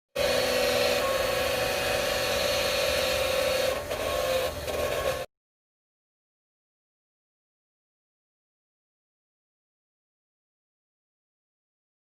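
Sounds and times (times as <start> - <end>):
pool pump motor screeching: 0.1 - 5.3.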